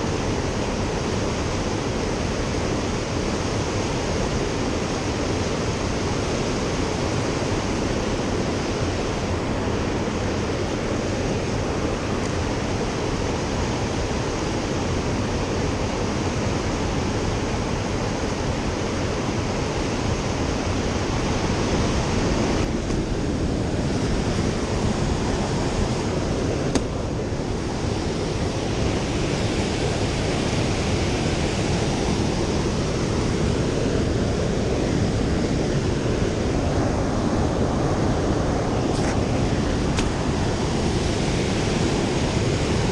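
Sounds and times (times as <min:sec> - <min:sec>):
river water rushing: 0:00.0 - 0:42.9.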